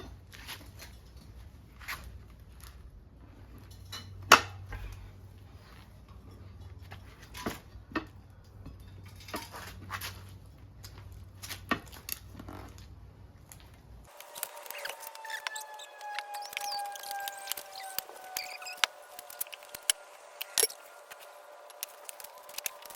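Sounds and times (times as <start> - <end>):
metal tools scraping wheel rim: 14.1 - 22.9.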